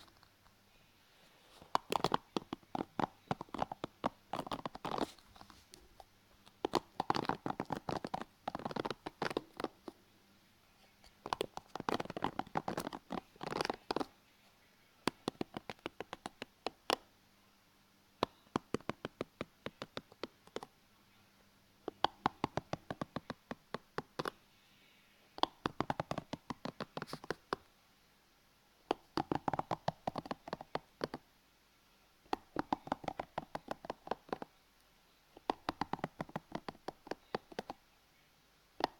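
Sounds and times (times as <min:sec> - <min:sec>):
scratchy rustles: 0:01.2 - 0:09.9.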